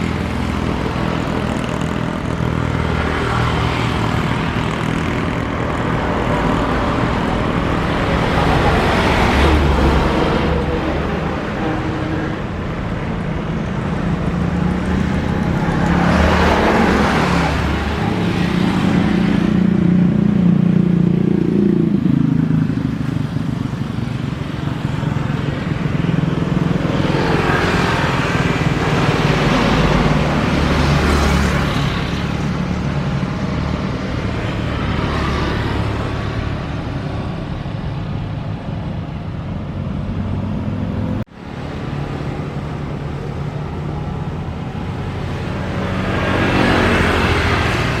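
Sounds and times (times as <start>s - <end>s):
steady engine hum: 0.0s - 48.0s
vehicles passing by: 0.0s - 48.0s.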